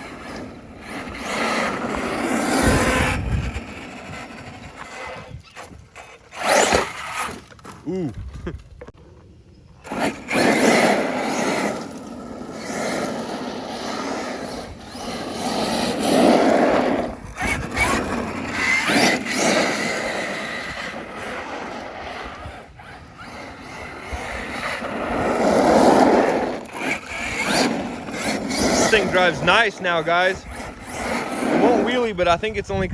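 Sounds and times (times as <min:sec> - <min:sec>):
electric rc truck driving: 0:00.0 - 0:32.5.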